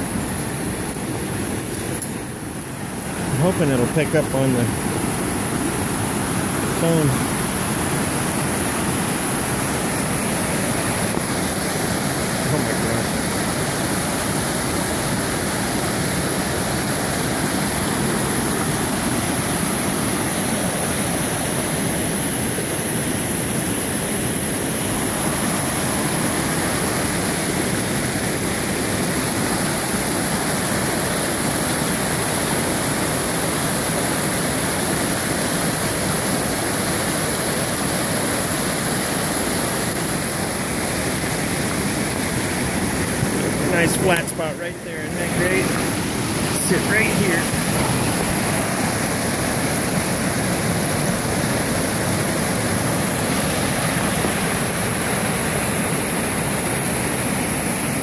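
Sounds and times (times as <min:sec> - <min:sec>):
waterfall rushing: 0:00.0 - 0:58.0.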